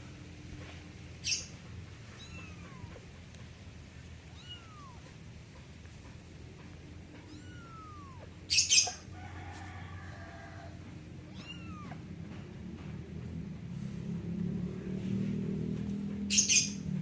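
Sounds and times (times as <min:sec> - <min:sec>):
kitten meowing: 0:02.1 - 0:03.0, 0:04.2 - 0:05.2, 0:07.2 - 0:08.6, 0:11.2 - 0:12.1.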